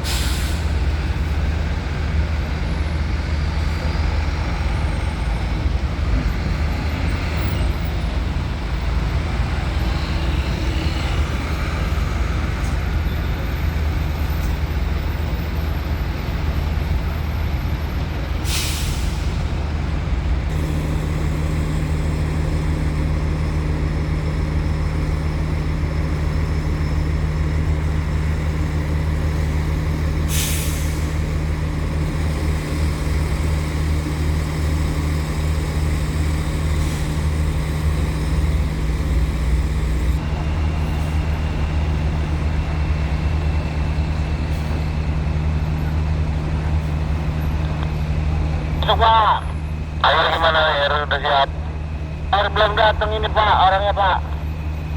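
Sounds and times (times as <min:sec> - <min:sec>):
air brake hissing: 0:00.0 - 0:00.7, 0:18.4 - 0:19.4, 0:30.3 - 0:31.1
diesel engines droning: 0:00.0 - 0:54.9.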